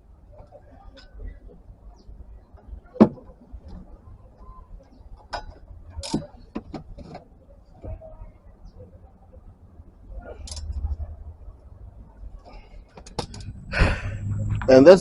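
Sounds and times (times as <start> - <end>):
metallic clicks and knocks of tools: 10.4 - 10.7.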